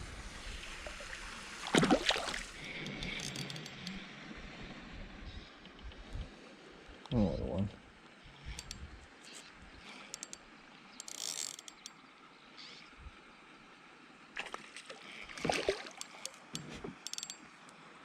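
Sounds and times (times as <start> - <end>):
fishing reel clicks and rattles: 2.6 - 4.0, 8.4 - 9.0, 9.8 - 12.0, 15.9 - 17.8.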